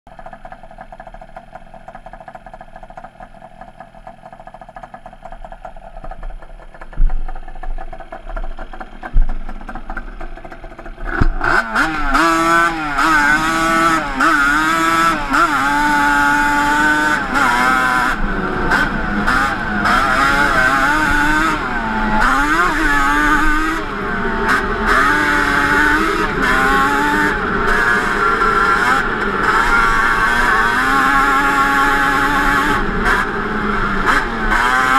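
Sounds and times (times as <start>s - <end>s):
two-stroke engine revving: 0.2s - 34.9s
sharp thumps: 4.8s - 11.6s.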